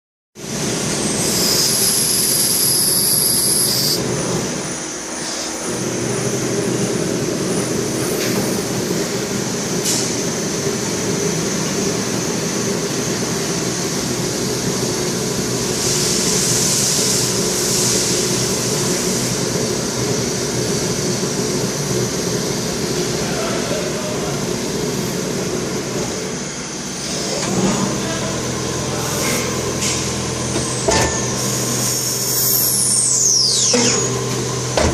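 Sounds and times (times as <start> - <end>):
lathe mechanical hum: 0.4 - 34.9
high hiss bursts: 1.1 - 4.0.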